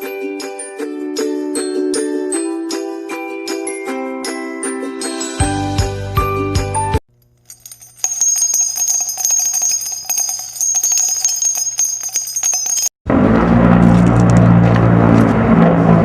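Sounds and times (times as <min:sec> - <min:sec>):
small bells jingling: 0:07.2 - 0:13.0.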